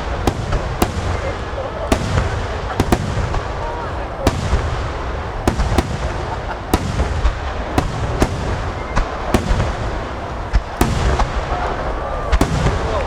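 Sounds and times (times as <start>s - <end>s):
low rumble of booms: 0.0s - 13.0s.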